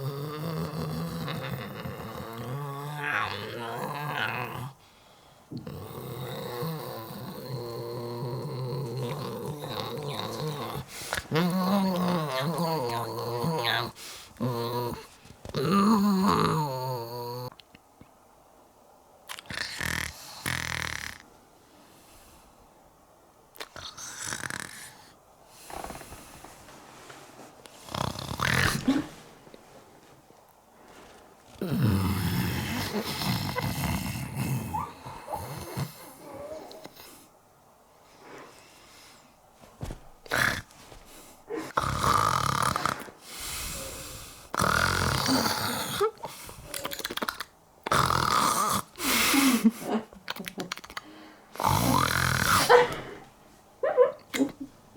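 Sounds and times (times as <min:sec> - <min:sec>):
comic snoring: 0:00.0 - 0:04.8, 0:05.5 - 0:17.5, 0:19.3 - 0:21.3, 0:23.7 - 0:26.1, 0:27.8 - 0:29.2, 0:31.6 - 0:37.1, 0:40.3 - 0:40.7, 0:41.5 - 0:46.7, 0:47.9 - 0:49.5, 0:51.6 - 0:53.3
quiet breath out: 0:04.8 - 0:05.8, 0:42.8 - 0:44.6, 0:51.0 - 0:51.6, 0:52.6 - 0:53.7.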